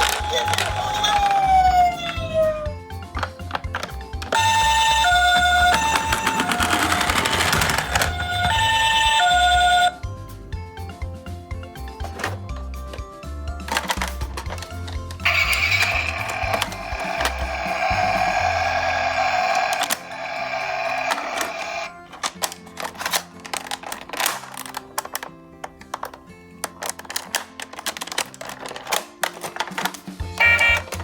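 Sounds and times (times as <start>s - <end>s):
toy two-tone siren: 0.0s - 2.8s, 4.3s - 10.0s, 15.2s - 21.9s, 30.4s - 31.0s
clattering rattle: 20.8s - 31.0s.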